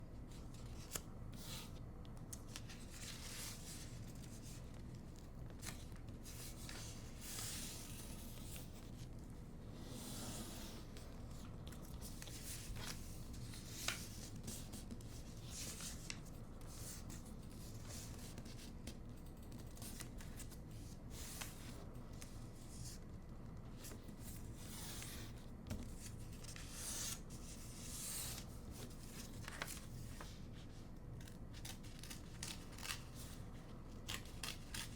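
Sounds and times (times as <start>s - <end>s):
paper rustling and creasing: 0.3s - 23.1s, 23.7s - 34.9s.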